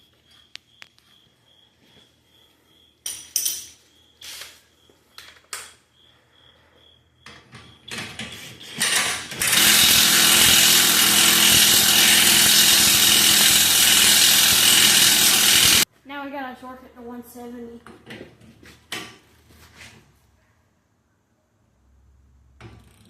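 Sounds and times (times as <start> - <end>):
impact wrench running: 8.9 - 15.9.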